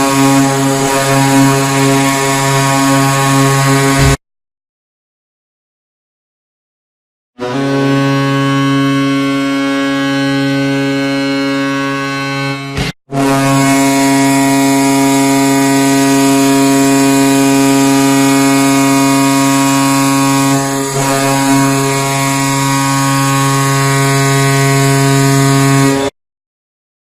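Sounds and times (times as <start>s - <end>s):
goal horn blast: 0.0s - 4.2s, 7.4s - 26.1s.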